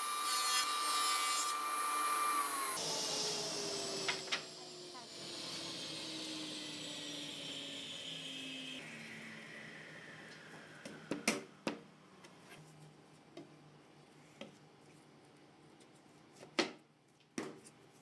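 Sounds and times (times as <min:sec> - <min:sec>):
power tool spinning down: 0:00.0 - 0:11.1.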